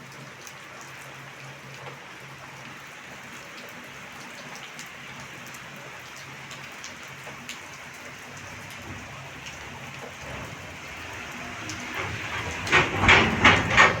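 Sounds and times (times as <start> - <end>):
heavy rain falling: 0.0 - 14.0
raindrops pattering: 0.0 - 14.0.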